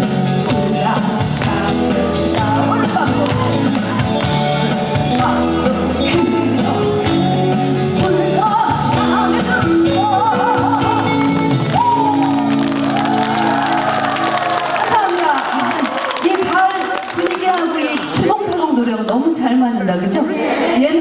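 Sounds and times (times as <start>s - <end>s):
woman singing with vibrato: 0.5s - 12.2s.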